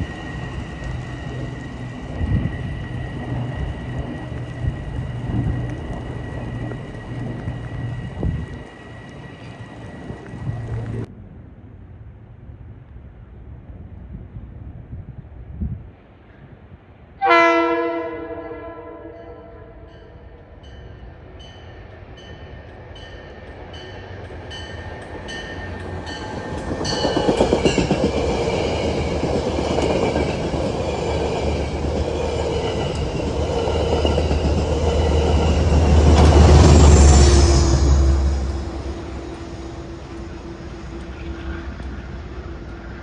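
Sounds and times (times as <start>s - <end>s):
train wheels rumbling on rails: 0.0s - 11.1s, 20.3s - 43.0s
train horn: 17.2s - 20.2s.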